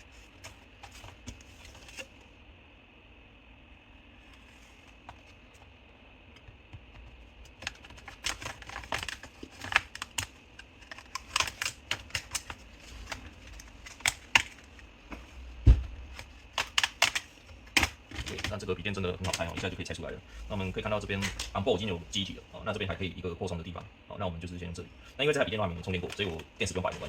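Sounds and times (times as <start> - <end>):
dull thump: 15.6 - 16.0.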